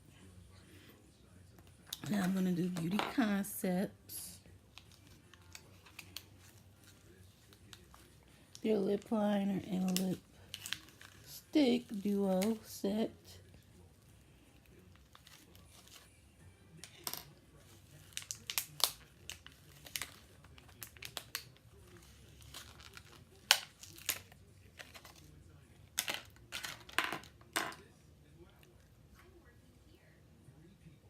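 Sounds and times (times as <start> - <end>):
packaging crinkling and tearing: 9.7 - 12.6, 14.6 - 16.1, 17.6 - 25.4.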